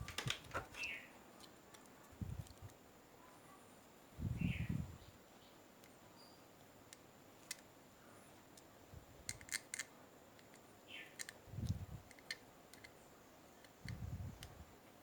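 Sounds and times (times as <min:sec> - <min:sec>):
tools clicking and tapping: 0:12.1 - 0:13.0.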